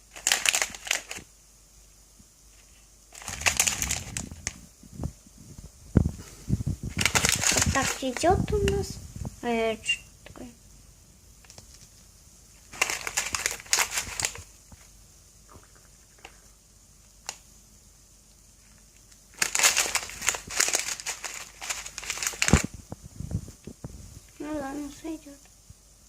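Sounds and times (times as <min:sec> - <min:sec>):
crinkling rustling handling noise: 0:00.0 - 0:01.3, 0:02.5 - 0:09.4, 0:11.4 - 0:15.0, 0:18.6 - 0:25.0.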